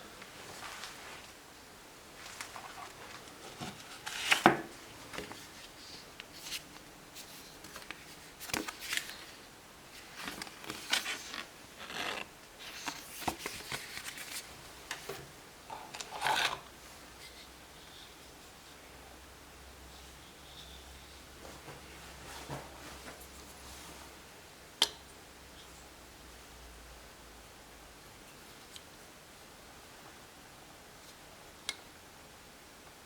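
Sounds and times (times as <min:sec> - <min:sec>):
packaging rustling and scraping: 0:02.2 - 0:09.4, 0:10.0 - 0:15.2.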